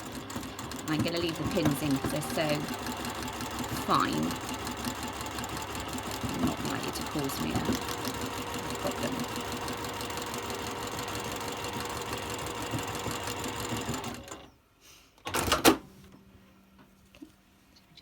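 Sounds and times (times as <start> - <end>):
sewing machine running: 0.0 - 14.5.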